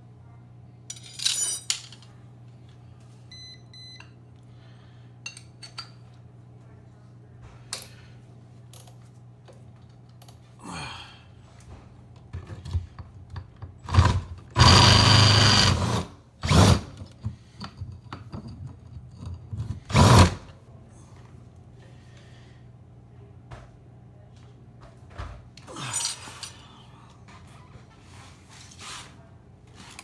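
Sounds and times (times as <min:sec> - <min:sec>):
hammer drill boring through wall: 0:13.8 - 0:17.0, 0:19.8 - 0:20.5.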